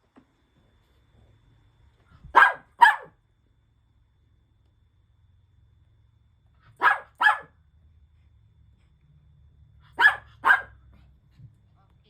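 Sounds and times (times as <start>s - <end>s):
small dog barking: 2.2s - 3.2s, 6.6s - 7.6s, 9.8s - 10.9s.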